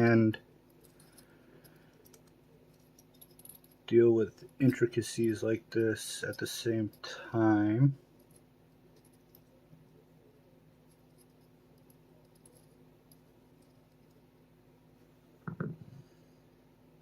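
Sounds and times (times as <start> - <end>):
small metal parts clicking: 0.7 - 5.4, 10.9 - 14.2.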